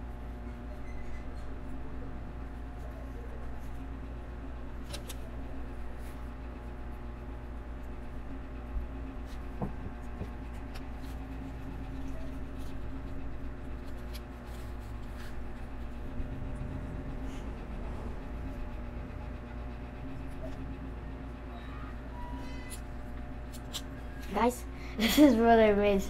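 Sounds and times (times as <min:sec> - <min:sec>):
steady background hum: 0:00.0 - 0:26.0.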